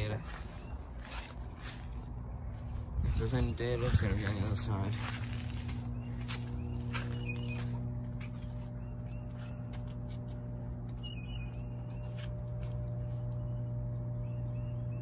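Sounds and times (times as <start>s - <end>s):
air conditioning hum: 0.0s - 15.0s
bird chirps: 5.7s - 10.0s, 10.9s - 15.0s.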